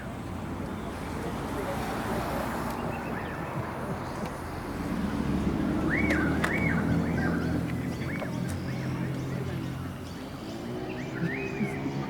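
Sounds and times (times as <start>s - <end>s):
bird calls: 5.8s - 9.2s.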